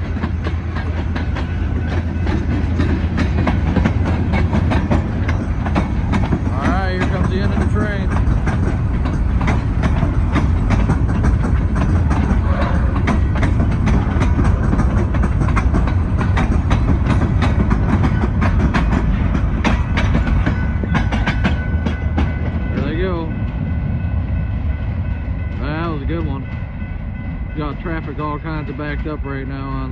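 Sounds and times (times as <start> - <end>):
wheels clicking over rail joints: 0.0 - 23.1
freight train rumbling past: 0.0 - 29.9.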